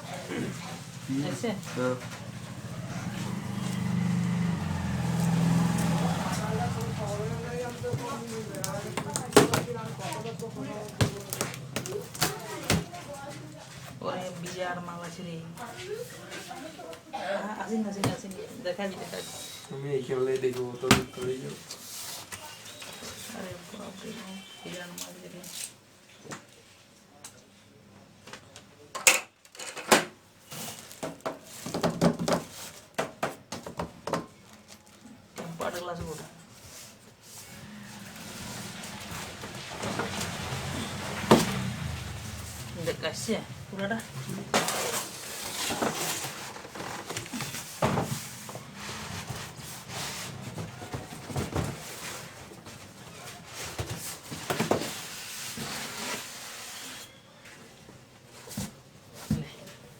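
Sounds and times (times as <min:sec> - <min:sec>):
packaging rustling: 0:06.4 - 0:13.2
knocks and thumps: 0:07.7 - 0:10.3
cardboard rubbing and scraping: 0:36.6 - 0:42.8, 0:44.1 - 0:57.1.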